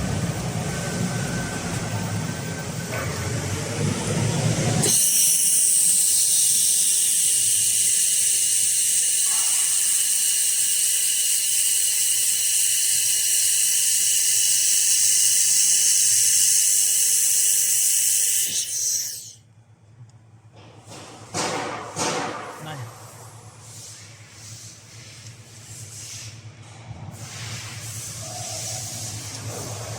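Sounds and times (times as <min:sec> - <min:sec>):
laser welder hissing: 0:04.8 - 0:19.4.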